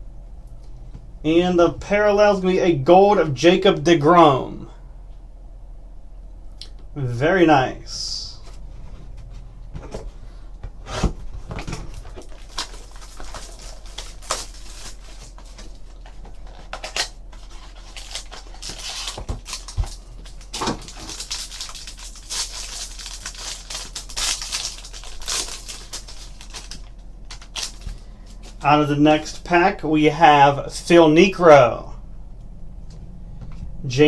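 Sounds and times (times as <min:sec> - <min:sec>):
wrapper rustling and tearing: 0:11.5 - 0:28.7.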